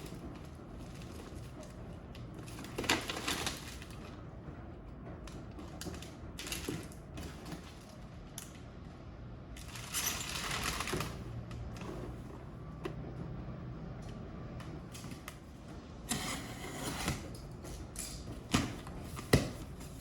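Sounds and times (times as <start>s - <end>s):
packaging rustling: 9.6s - 12.5s.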